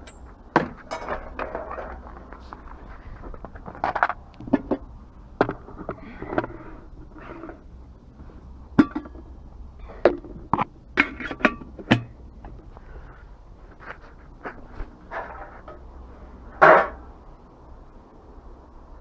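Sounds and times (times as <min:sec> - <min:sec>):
scrap metal knocks and clinks: 0:00.0 - 0:07.6, 0:08.2 - 0:09.4, 0:11.0 - 0:12.8.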